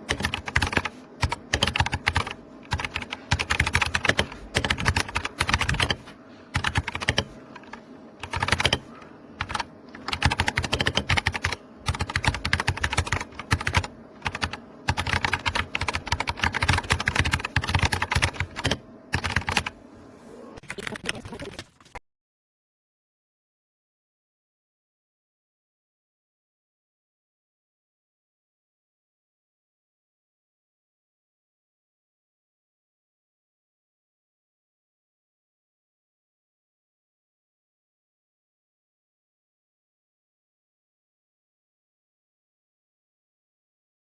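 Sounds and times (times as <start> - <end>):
mechanical keyboard typing: 0.0 - 19.8, 20.6 - 22.0.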